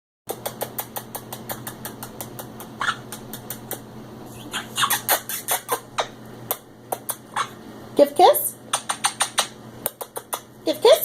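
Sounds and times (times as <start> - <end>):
steady low hum: 0.3 - 11.0
pet birds squeaky chirps: 2.8 - 3.2, 4.3 - 6.2, 7.2 - 7.6, 8.7 - 9.6.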